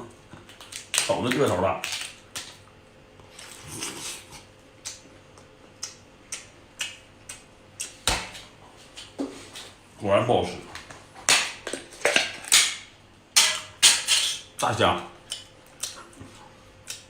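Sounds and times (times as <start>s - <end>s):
wet chewing clicks and smacks: 4.8s - 8.0s, 15.2s - 17.0s.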